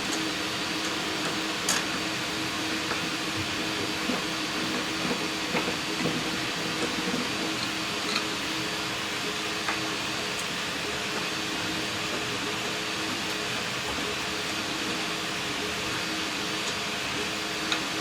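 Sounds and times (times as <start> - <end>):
mechanical whirr and hiss: 0.0 - 18.0.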